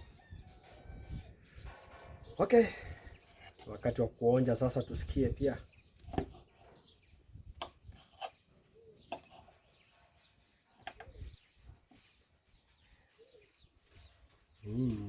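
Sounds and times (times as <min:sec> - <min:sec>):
faint bird chirps: 0:04.9 - 0:15.0.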